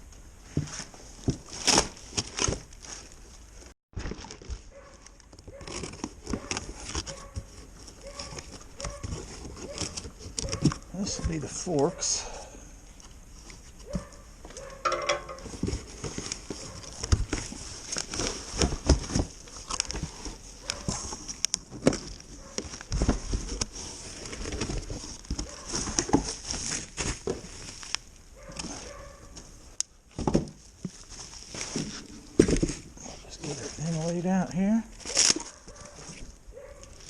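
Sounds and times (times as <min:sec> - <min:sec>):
parts knocking and clunking: 0:14.8 - 0:16.2.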